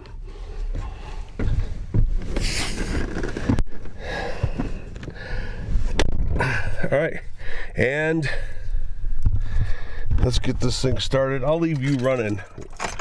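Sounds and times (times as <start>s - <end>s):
gear rustling and knocking: 0.0s - 5.2s, 11.6s - 13.0s.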